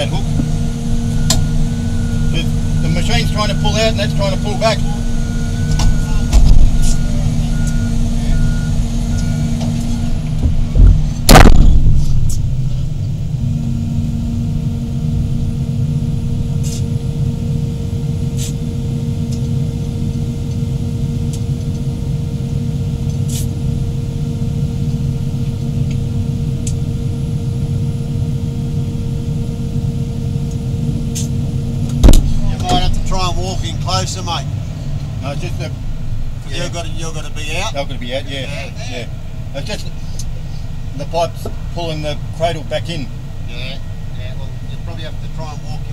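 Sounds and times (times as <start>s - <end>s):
excavator diesel engine and hydraulics: 0.0s - 45.9s
steady whine: 0.0s - 45.9s
loud sudden noise: 10.7s - 12.7s.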